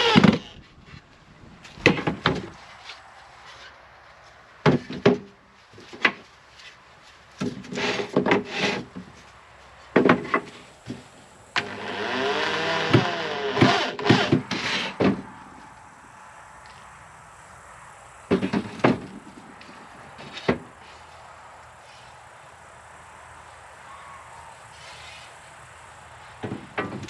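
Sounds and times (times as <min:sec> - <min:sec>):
power tool running: 0:11.6 - 0:14.9.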